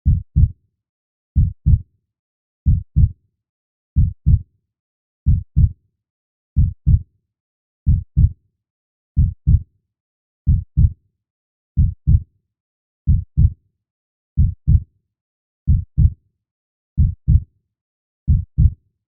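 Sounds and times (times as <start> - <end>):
heartbeat thumps: 5.3 - 5.7, 11.8 - 12.2, 14.4 - 14.8.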